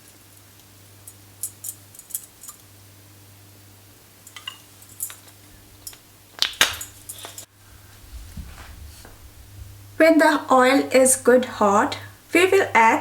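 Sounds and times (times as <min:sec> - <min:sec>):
kitchen utensils clinking: 0:04.2 - 0:06.0, 0:06.6 - 0:07.5.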